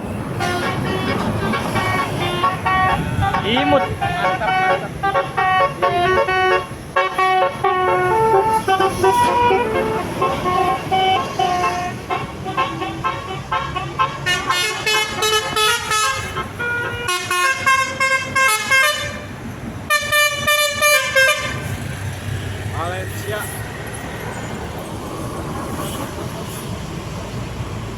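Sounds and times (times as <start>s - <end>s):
musical bus horn melody: 0.0s - 21.8s
bus engine running: 0.0s - 27.9s.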